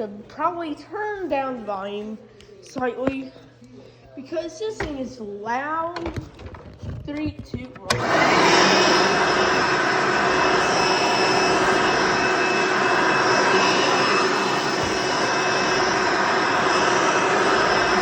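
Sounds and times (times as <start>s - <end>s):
vacuum cleaner motor whine: 7.8s - 18.0s.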